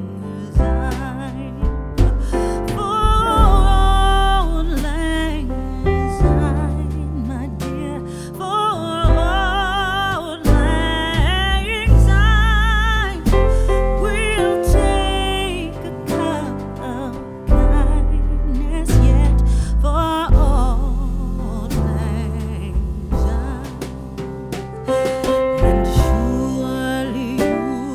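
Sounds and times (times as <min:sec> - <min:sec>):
deep sustained bass notes: 0:00.0 - 0:24.6, 0:25.6 - 0:27.9
person singing with vibrato: 0:25.6 - 0:27.9.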